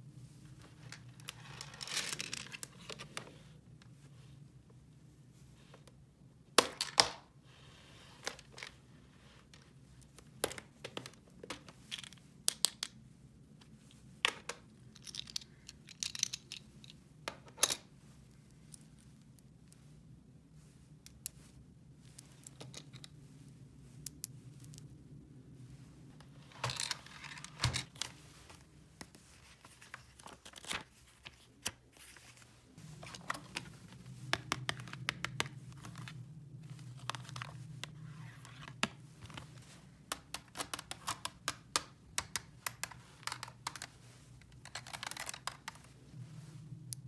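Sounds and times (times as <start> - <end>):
low steady hum: 13.0 - 40.6, 41.9 - 47.0.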